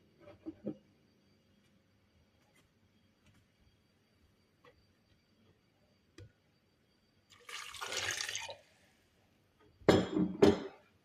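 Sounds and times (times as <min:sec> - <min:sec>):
water pouring into blender jug: 0:07.3 - 0:08.6.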